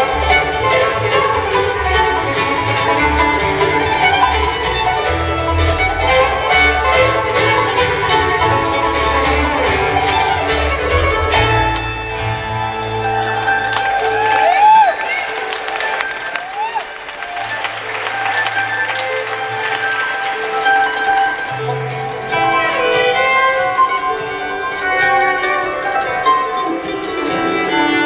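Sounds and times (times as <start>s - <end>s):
upright bass: 0.0s - 13.6s
mandolin banjo and guitar picking: 0.0s - 14.5s, 17.3s - 28.0s
fiddle: 0.0s - 28.0s.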